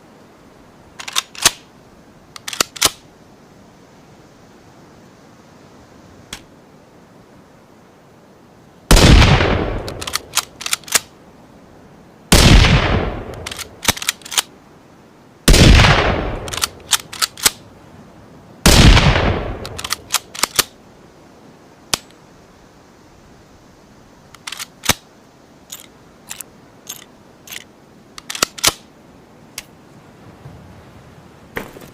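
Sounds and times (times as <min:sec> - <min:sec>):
rifle bolt metallic clicks: 0:01.0 - 0:01.6, 0:02.3 - 0:03.0, 0:09.8 - 0:11.1, 0:13.3 - 0:14.5, 0:16.4 - 0:17.6, 0:19.6 - 0:20.7, 0:24.4 - 0:25.0, 0:25.7 - 0:28.8
rifle shots: 0:08.9 - 0:11.0, 0:12.3 - 0:14.4, 0:15.5 - 0:17.6, 0:18.7 - 0:20.7
faint click: 0:29.5 - 0:29.7.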